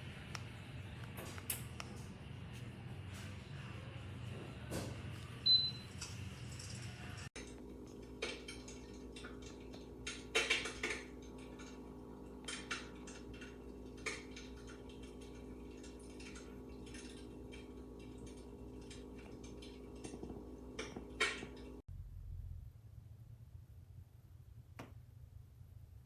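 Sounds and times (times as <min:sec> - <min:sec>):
steady hum: 0:07.4 - 0:22.8.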